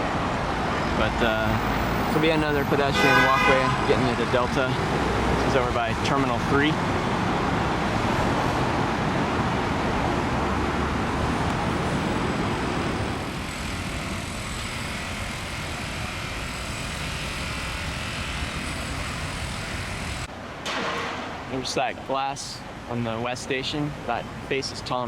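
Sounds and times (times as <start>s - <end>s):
vehicle noise: 0.0s - 24.7s.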